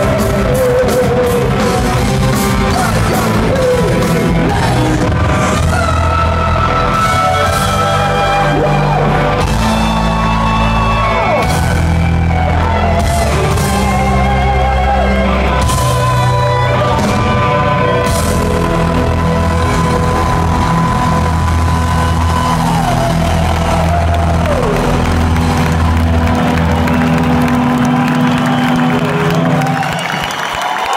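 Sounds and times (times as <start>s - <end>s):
sliding lead guitar melody: 0.0s - 29.6s
heavy metal band playing live: 0.0s - 30.2s.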